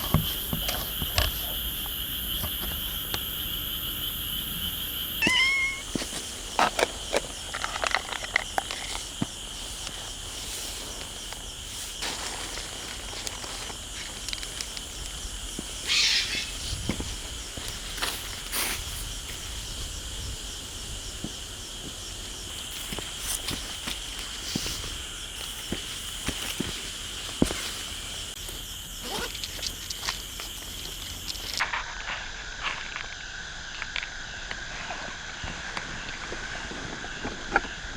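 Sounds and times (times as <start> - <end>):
high-pitched insect-like drone: 1.4 - 6.0.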